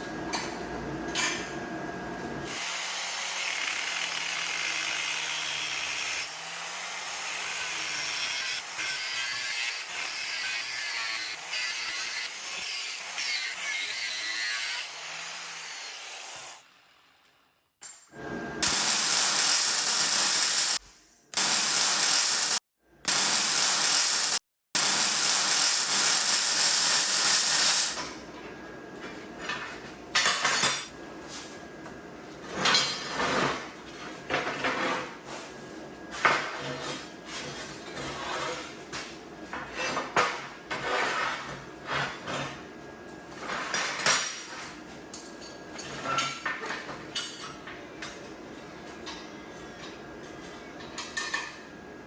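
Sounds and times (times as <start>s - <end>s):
loud steady hiss: 18.6s - 20.8s, 21.4s - 28.0s
metal parts clinking: 21.4s - 28.0s.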